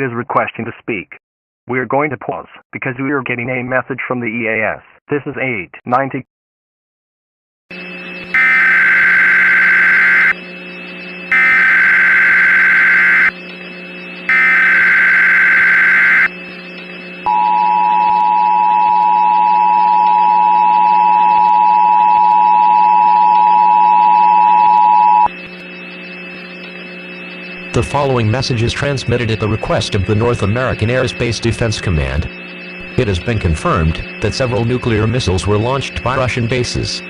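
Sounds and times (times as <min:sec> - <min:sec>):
faint steady hum: 0:07.8 - 0:37.0
digital data warble bursts: 0:08.4 - 0:10.4, 0:11.3 - 0:13.3, 0:14.3 - 0:16.3.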